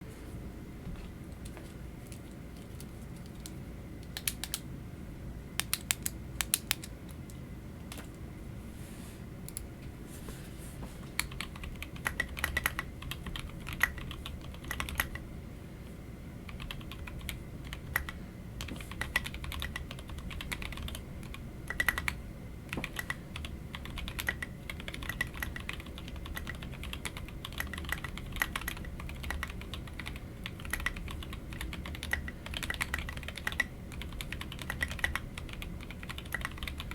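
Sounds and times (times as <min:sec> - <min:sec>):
mechanical keyboard typing: 0:11.2 - 0:15.2, 0:16.5 - 0:36.9.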